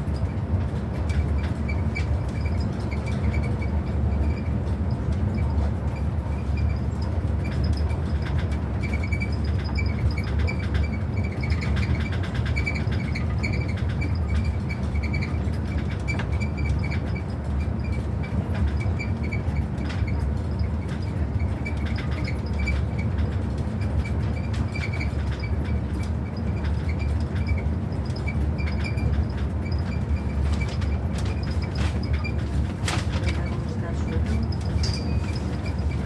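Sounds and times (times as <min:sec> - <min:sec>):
train rumbling on track: 0:00.0 - 0:36.0.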